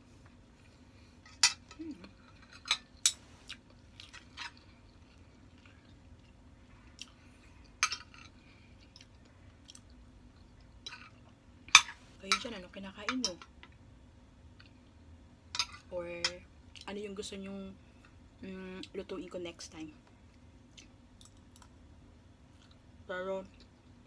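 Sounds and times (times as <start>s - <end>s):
faint chewing: 1.7s - 11.4s, 20.0s - 21.8s, 22.5s - 22.9s.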